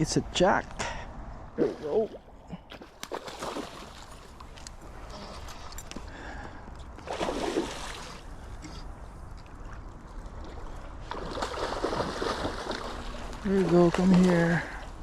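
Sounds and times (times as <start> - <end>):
river water trickling: 1.0 - 15.0
water splash: 2.8 - 4.4, 7.0 - 8.2, 11.0 - 14.5.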